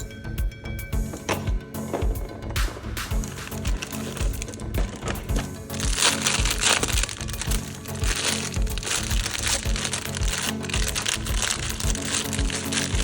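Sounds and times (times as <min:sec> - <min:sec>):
background music with steady beat: 0:00.0 - 0:13.0
plastic packaging crinkling: 0:03.2 - 0:13.0.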